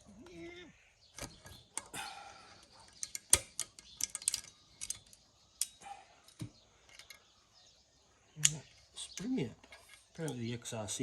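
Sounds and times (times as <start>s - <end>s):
metallic clicks and taps: 2.8s - 7.2s.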